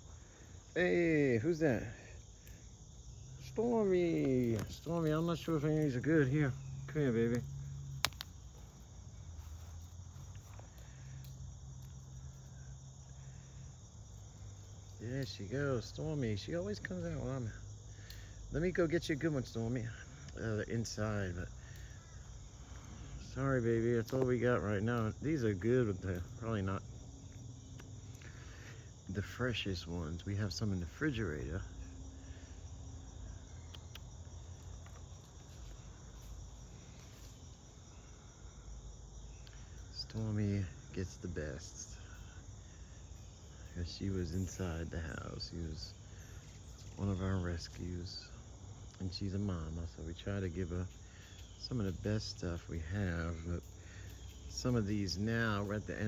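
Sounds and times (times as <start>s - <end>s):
crickets chirring: 0.0s - 56.0s
faint clicks: 7.3s - 8.8s, 33.6s - 36.4s.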